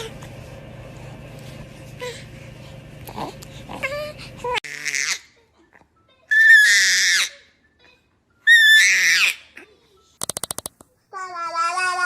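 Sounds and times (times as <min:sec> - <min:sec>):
baby squealing: 0:08.4 - 0:09.5.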